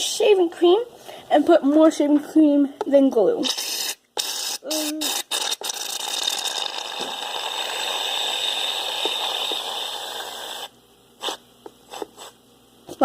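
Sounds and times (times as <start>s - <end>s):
aerosol can spraying foam: 3.4s - 11.4s.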